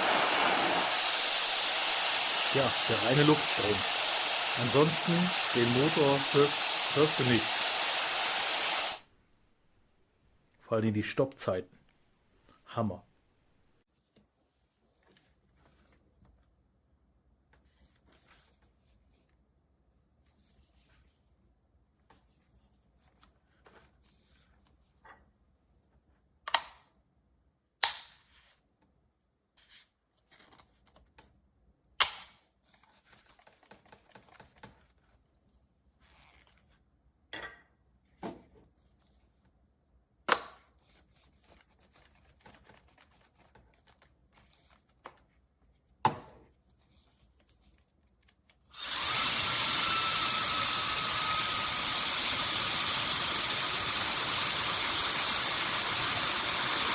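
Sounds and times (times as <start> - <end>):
hair dryer running: 0.0 - 9.0, 48.8 - 56.9.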